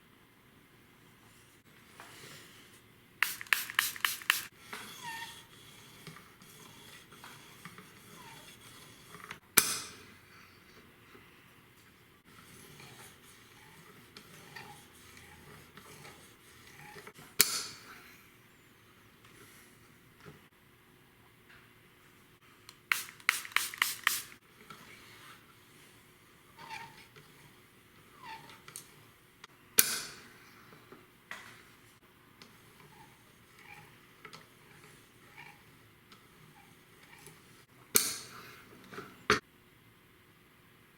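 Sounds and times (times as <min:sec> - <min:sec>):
knife scraping on sharpener: 0:03.2 - 0:09.4, 0:12.3 - 0:17.4.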